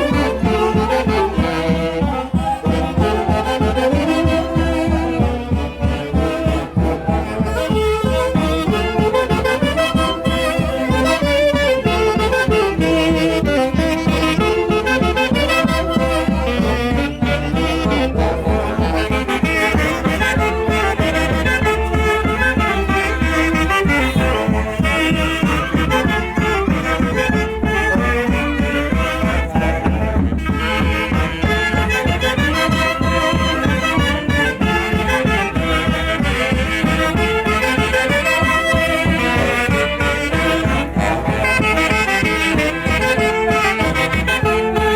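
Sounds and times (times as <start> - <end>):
brass band festival music: 0.0 - 44.9.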